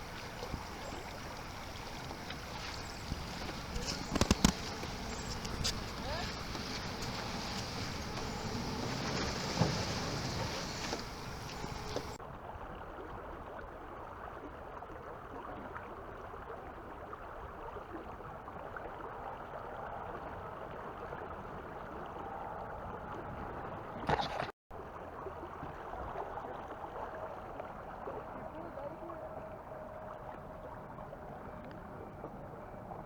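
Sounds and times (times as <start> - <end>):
river water flowing: 0.0 - 12.2.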